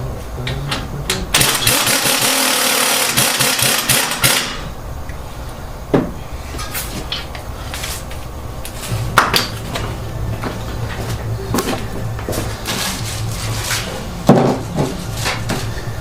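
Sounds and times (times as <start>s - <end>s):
impact wrench running: 1.3s - 4.7s.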